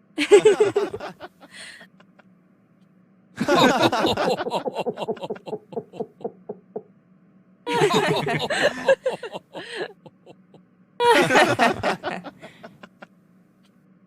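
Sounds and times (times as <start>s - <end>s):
faint low hum: 0.0s - 14.0s
person laughing: 0.2s - 1.2s, 3.4s - 6.3s, 7.7s - 12.8s.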